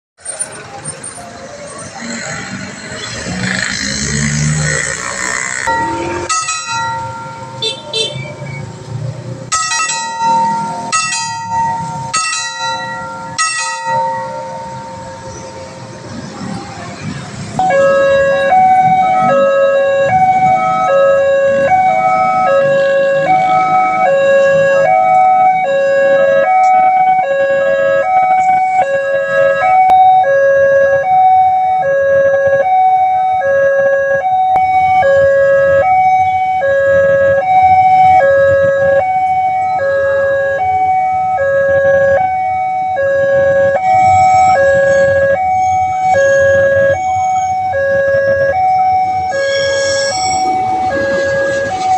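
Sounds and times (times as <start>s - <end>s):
level crossing two-tone alarm: 17.6s - 51.9s.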